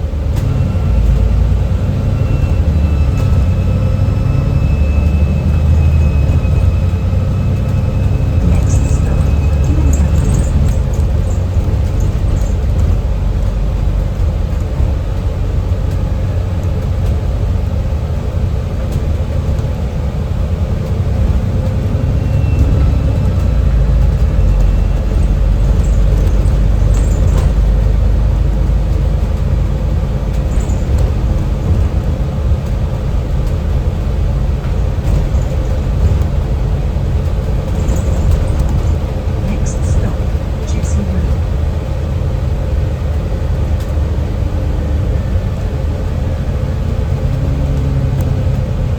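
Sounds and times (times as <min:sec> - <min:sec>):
bus engine and road rumble: 0:00.0 - 0:48.9
heater fans running: 0:00.0 - 0:48.9
faint turbo whistle: 0:00.3 - 0:13.1, 0:21.6 - 0:28.0.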